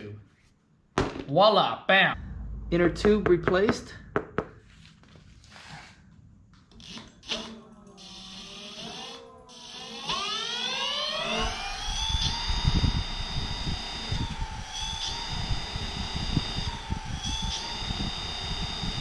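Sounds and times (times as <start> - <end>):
low rumbling noise: 2.1 - 6.7
electric motor whining: 6.8 - 19.0.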